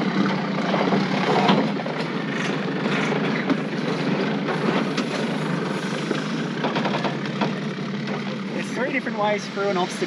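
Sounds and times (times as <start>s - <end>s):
knocks and rattles over bumps: 0.0s - 9.0s
vehicle engine and driveline noise: 0.0s - 10.0s.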